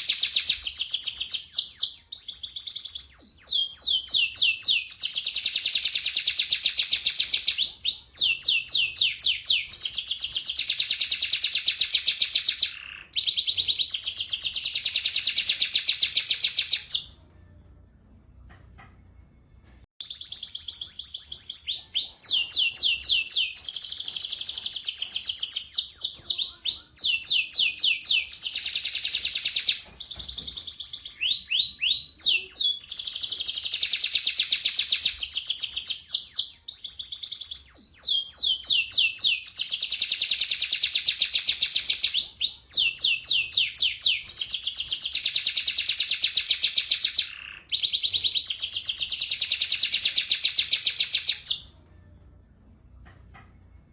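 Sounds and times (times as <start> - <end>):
canary singing trills: 0.0 - 17.2, 20.0 - 51.7.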